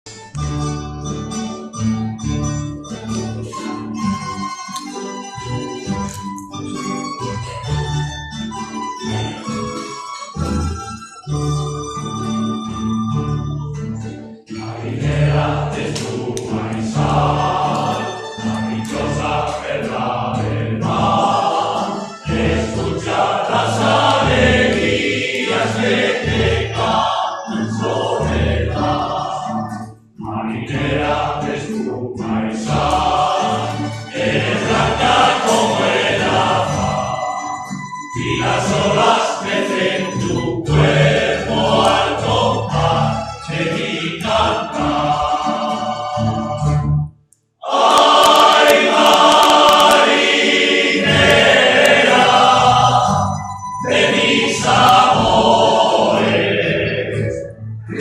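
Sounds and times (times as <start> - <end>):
instrumental song introduction: 0.1 - 58.0
choir-like music: 2.9 - 13.7, 14.4 - 58.0.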